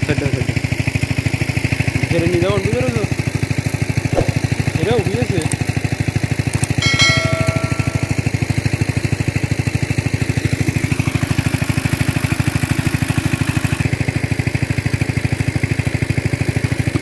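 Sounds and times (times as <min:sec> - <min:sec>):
small engine chugging: 0:00.0 - 0:03.6.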